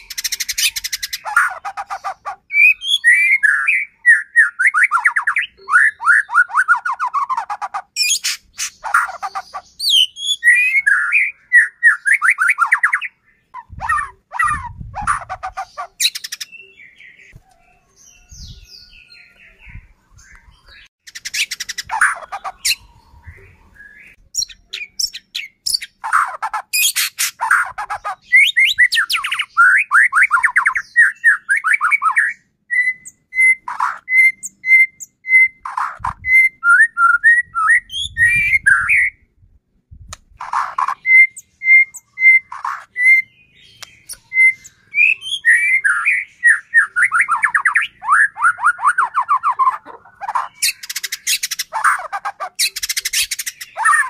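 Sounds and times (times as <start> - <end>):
bird singing whistles: 2.5 - 7.4, 8.0 - 14.7, 28.3 - 39.3, 40.8 - 49.7.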